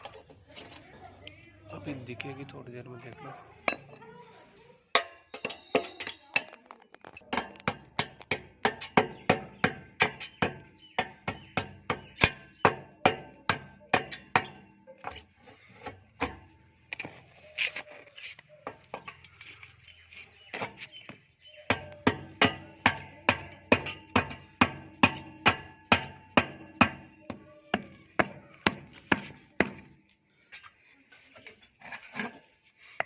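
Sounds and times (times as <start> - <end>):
hammer striking a pipe: 7.3 - 14.7, 21.7 - 29.8.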